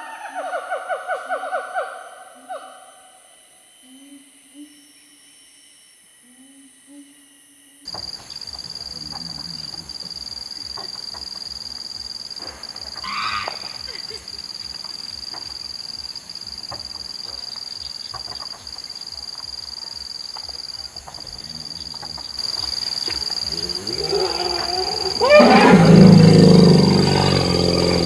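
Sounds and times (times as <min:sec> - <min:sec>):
high-pitched insect drone: 0:01.4 - 0:28.0
loud animal call: 0:12.9 - 0:15.6, 0:21.2 - 0:28.0.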